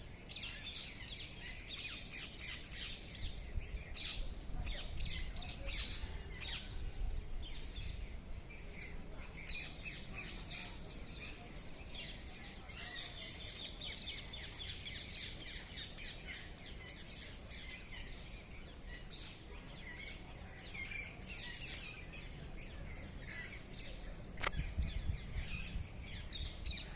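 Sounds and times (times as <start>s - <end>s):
birds chirping: 0.0s - 26.9s
sharp click: 24.4s - 24.6s.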